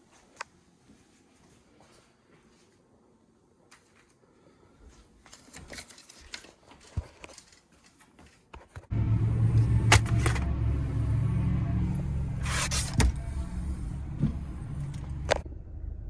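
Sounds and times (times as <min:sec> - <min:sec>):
light clicks and rustling: 0:05.2 - 0:08.8
car engine starting and running: 0:08.9 - 0:16.0.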